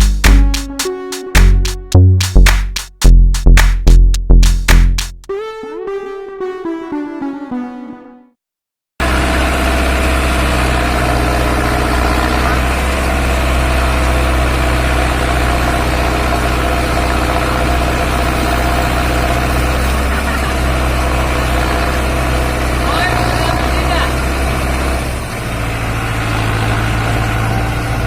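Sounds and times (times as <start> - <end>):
diesel engine idling: 9.0 - 28.0.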